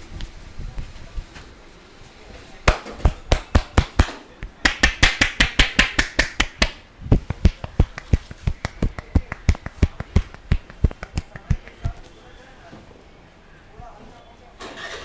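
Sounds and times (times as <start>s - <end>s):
hands tapping in head massage: 2.7s - 12.1s.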